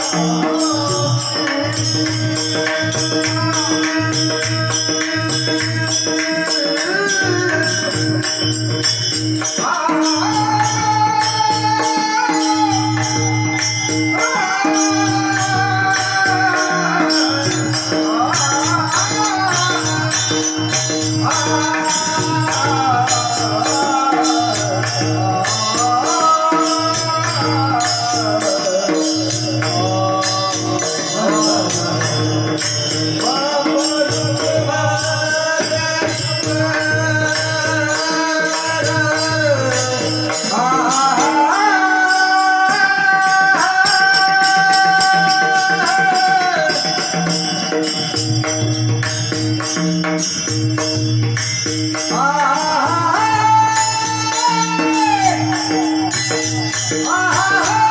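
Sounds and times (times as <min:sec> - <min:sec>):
devotional singing: 0:00.0 - 0:50.5, 0:51.3 - 0:57.9.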